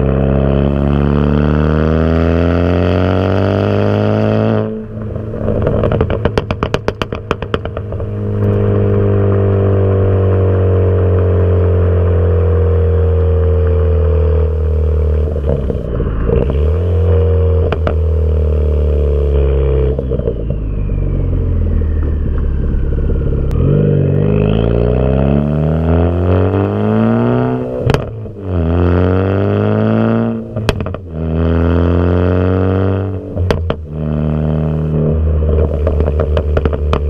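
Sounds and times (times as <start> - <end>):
car exhaust note: 0.0 - 37.0
sharp exhaust pops: 5.0 - 8.7, 15.0 - 18.2, 27.7 - 28.4, 30.6 - 31.6, 33.3 - 37.0.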